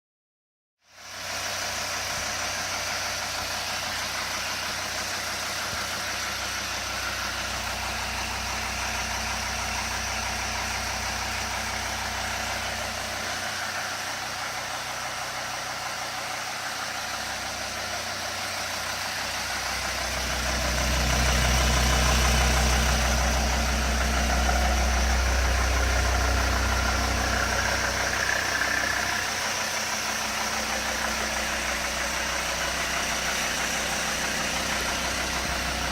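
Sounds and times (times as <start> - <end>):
diesel engine idling with knock: 1.0 - 35.9.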